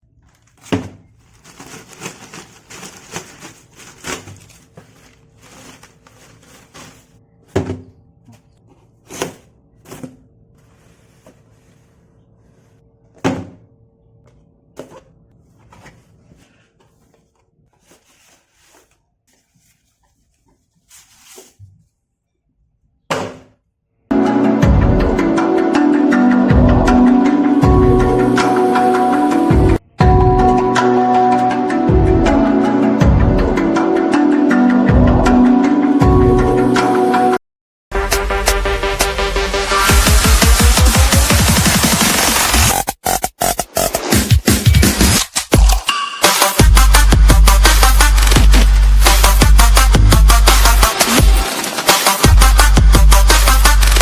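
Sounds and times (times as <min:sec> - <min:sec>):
packaging rustling: 0:00.1 - 0:07.2, 0:15.5 - 0:21.7
knocks and thunks of a box: 0:07.5 - 0:08.0, 0:13.2 - 0:13.7, 0:23.1 - 0:23.6.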